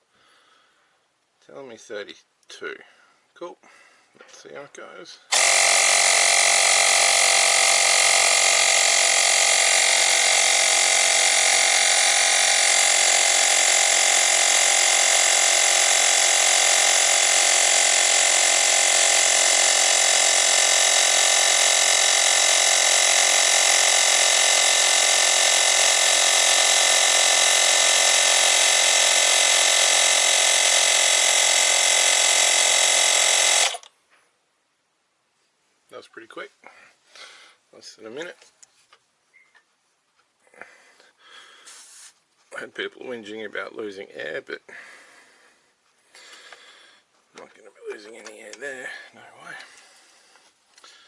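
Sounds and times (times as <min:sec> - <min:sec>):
electric tyre inflator running: 0:05.3 - 0:33.9, 0:40.6 - 0:42.2, 0:46.2 - 0:47.0, 0:49.6 - 0:51.0.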